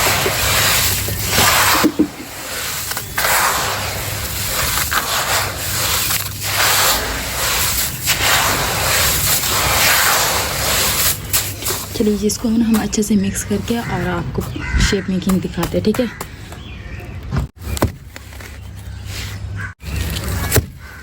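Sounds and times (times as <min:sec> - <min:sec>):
sand and cement mixture scraping: 0:00.0 - 0:15.6.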